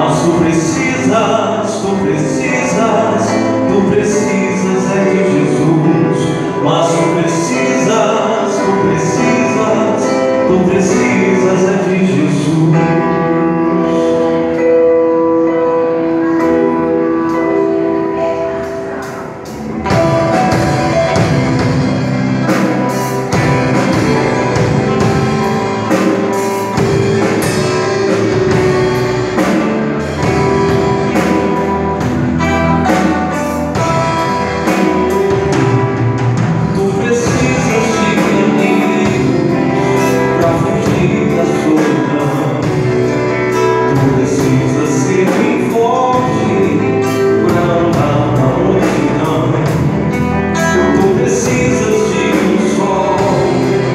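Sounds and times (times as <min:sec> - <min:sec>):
drum kit: 0:00.0 - 0:53.9
guitar: 0:00.0 - 0:53.9
live band playing: 0:00.0 - 0:53.9
person singing: 0:00.0 - 0:53.9.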